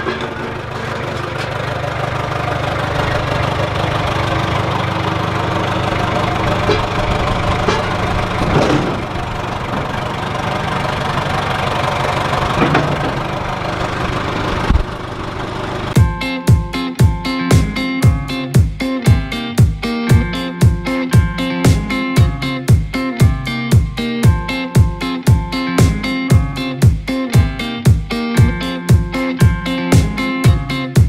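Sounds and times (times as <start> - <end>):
backhoe knocks and clunks: 0.0 - 16.0
tractor engine running: 0.0 - 31.0.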